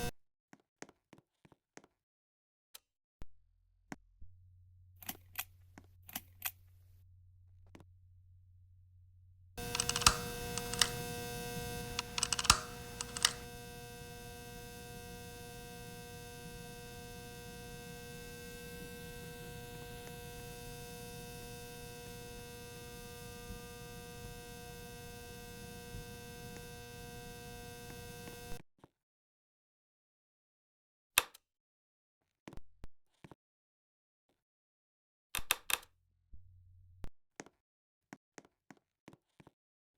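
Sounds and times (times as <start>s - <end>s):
sharp clicks: 9.6s - 13.9s
ceiling fan humming: 9.6s - 28.6s.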